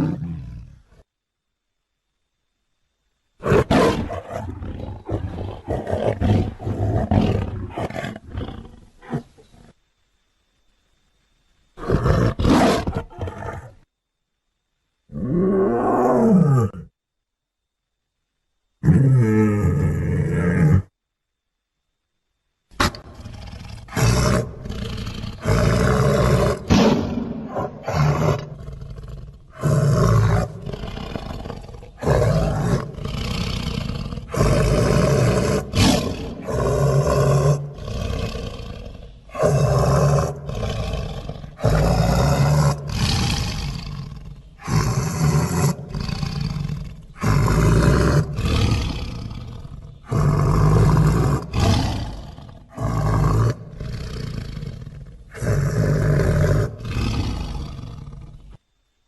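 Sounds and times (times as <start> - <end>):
creature roars and snarls: 22.8 - 58.4.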